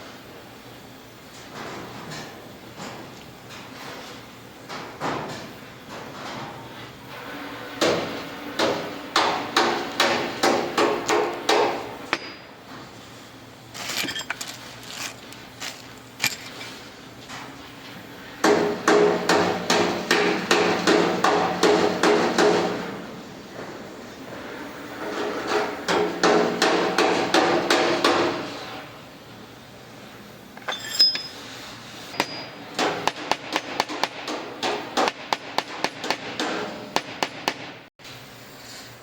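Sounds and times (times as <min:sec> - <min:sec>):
hammer striking metal: 0:08.6 - 0:12.4, 0:32.2 - 0:37.7.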